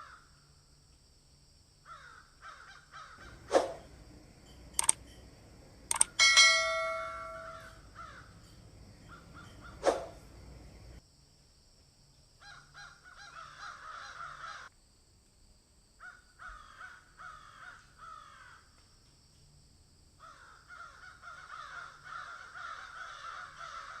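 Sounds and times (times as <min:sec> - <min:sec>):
birds calling: 0:02.0 - 0:11.0.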